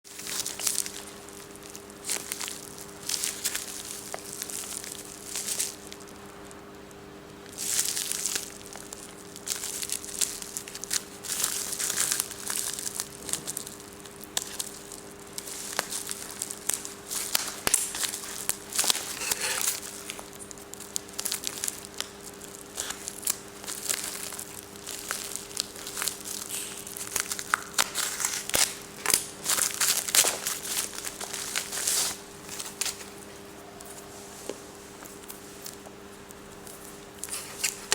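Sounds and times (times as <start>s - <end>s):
plastic packaging crinkling: 0.1s - 6.3s, 7.5s - 37.9s.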